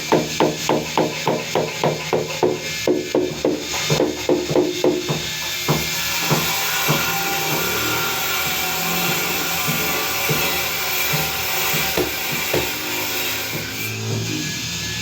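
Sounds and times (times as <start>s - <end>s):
power tool hissing: 0.0s - 15.0s
faint regular knocks: 8.5s - 14.4s.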